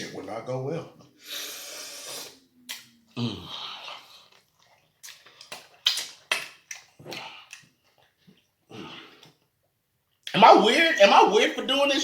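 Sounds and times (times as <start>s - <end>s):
person breathing: 1.2s - 2.4s
wet lip smacks: 4.3s - 8.0s.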